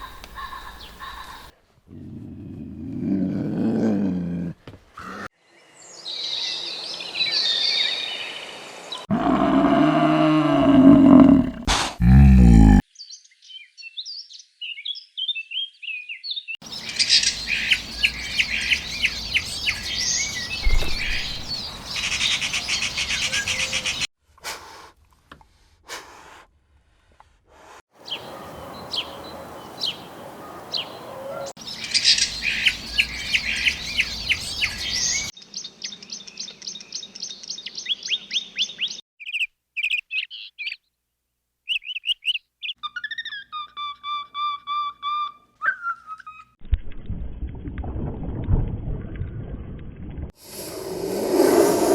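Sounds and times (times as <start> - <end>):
small birds chirping: 12.9 - 24.1, 28.0 - 41.0, 41.7 - 46.6.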